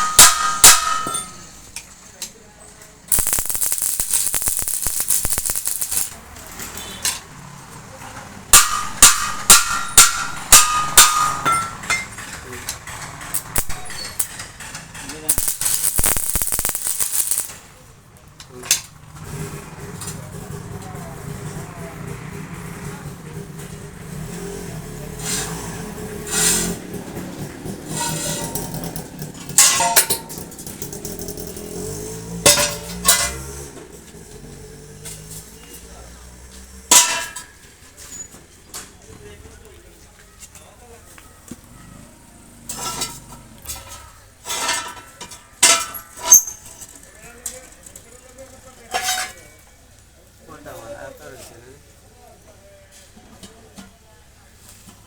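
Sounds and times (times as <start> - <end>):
hammer blows on metal: 0.0 - 1.6, 8.5 - 11.8.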